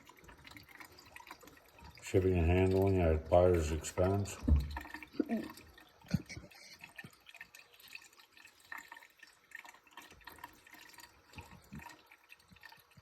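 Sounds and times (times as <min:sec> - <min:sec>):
liquid trickling and dripping: 0:00.0 - 0:13.0.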